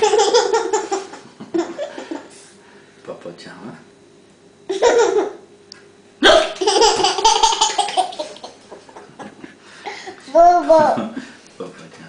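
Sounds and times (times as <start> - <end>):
child laughing: 0.0 - 2.3, 4.7 - 5.4, 6.6 - 11.2.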